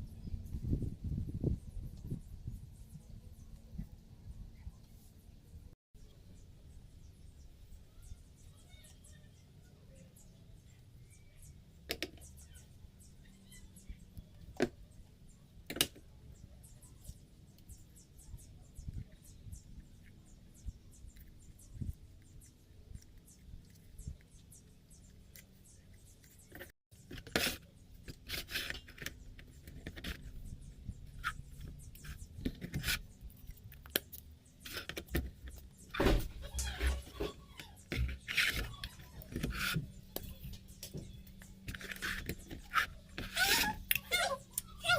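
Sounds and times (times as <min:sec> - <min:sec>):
small objects being handled: 0:25.1 - 0:44.2.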